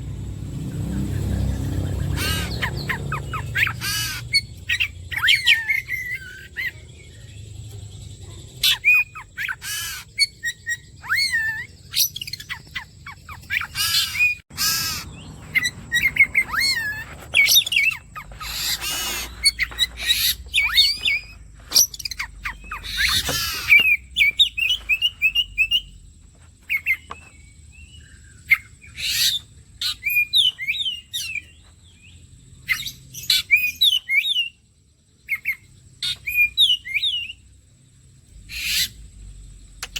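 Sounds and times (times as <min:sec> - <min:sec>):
songbird singing whistles and chirps: 0:00.1 - 0:39.9
harsh rasping bird notes: 0:02.0 - 0:06.4, 0:13.4 - 0:25.8.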